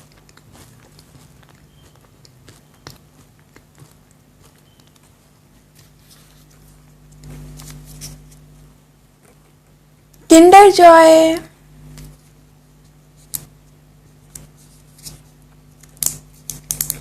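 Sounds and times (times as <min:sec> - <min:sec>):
chewing mouth clicks: 0:00.0 - 0:05.2
steady low hum: 0:00.0 - 0:17.0.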